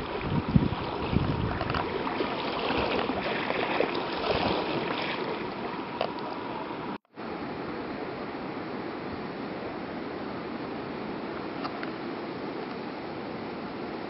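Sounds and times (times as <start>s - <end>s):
floodwater rushing and splashing: 0.0s - 7.0s.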